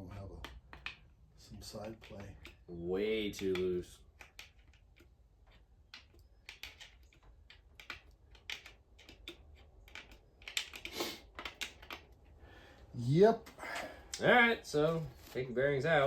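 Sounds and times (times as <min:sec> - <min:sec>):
metallic clicks of engine rods: 0:00.0 - 0:12.4.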